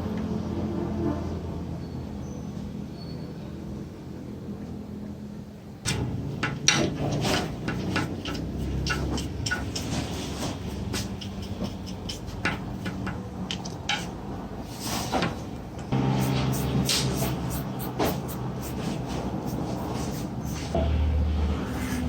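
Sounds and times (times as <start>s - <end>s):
hard parts clinking and knocking: 5.9s - 14.2s
low steady hum: 15.8s - 22.0s.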